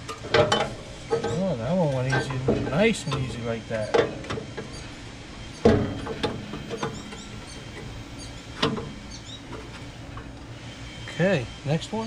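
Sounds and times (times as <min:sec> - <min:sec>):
metal knocks and clicks: 0:00.0 - 0:03.3, 0:05.6 - 0:07.9, 0:08.6 - 0:10.3.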